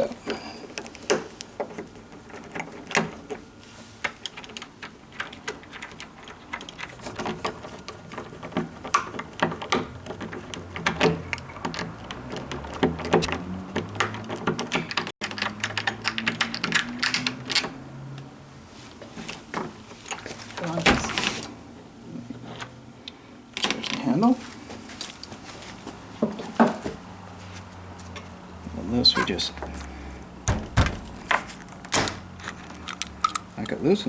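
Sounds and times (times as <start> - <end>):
metal screws clicking and clinking: 30.5 - 34.0.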